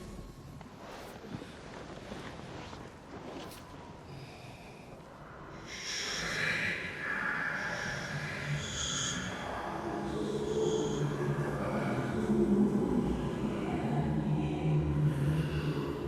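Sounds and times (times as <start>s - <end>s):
raspy hissing breath-like sound: 5.5s - 11.2s.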